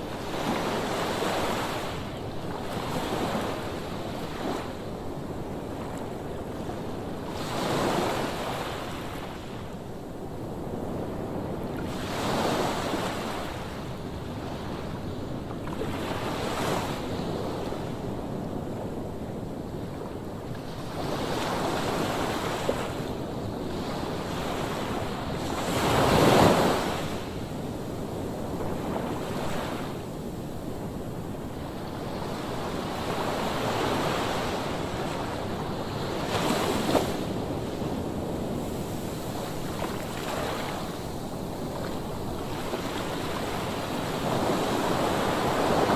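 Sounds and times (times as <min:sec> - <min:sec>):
waves crashing on beach: 0:20.6 - 0:45.9.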